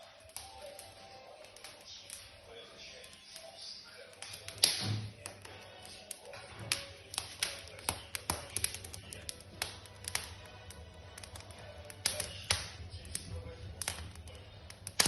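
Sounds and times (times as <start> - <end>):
firewood crackling and popping: 0.0 - 15.0.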